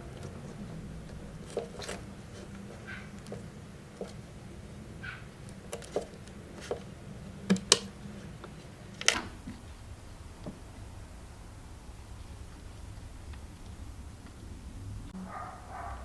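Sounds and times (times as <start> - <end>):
low steady hum: 0.0 - 16.0
tools and parts clicking and tapping: 7.5 - 9.7.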